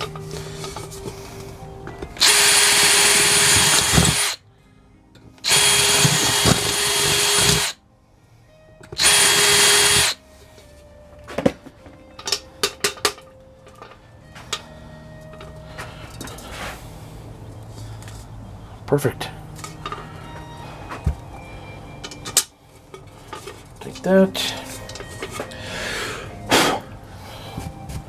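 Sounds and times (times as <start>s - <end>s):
power drill whining: 0.0s - 4.4s, 5.4s - 7.8s, 9.0s - 10.2s.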